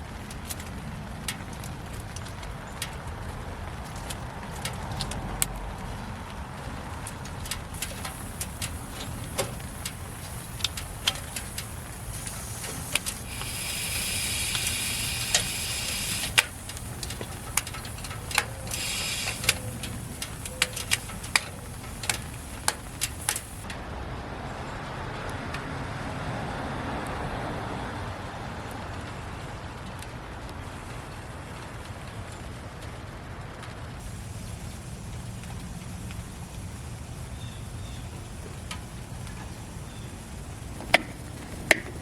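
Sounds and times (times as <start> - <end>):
wood fire crackling: 0.0 - 23.7, 29.0 - 42.0
fire hiss: 6.3 - 23.7, 34.0 - 42.0.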